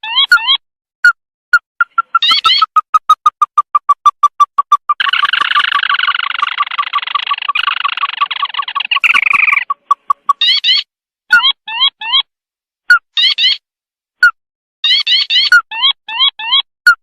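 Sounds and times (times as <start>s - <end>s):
chattering bird trill: 0.0s - 0.6s, 1.8s - 12.3s, 13.2s - 13.6s, 14.8s - 16.7s
bird call repeated notes: 0.0s - 12.3s.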